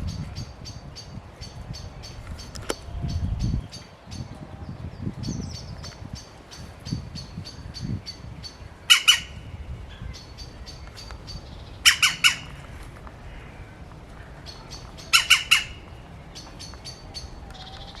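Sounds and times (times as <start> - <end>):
birds squawking harshly: 5.6 - 18.0.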